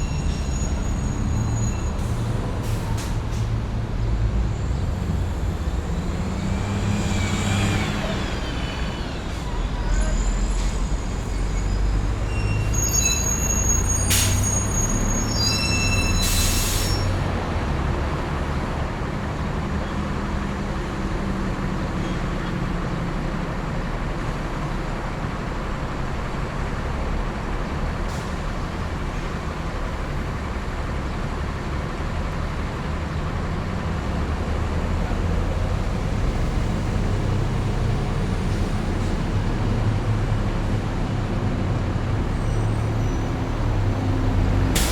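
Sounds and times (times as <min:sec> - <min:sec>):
traffic rumble: 0:00.0 - 0:44.9
high squealing tones: 0:06.5 - 0:17.2.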